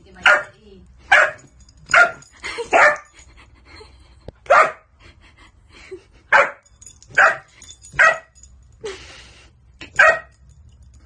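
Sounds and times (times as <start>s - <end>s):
dog barking: 0.2s - 0.5s, 1.1s - 3.1s, 4.5s - 4.8s, 6.3s - 6.6s, 7.2s - 8.3s, 10.0s - 10.3s.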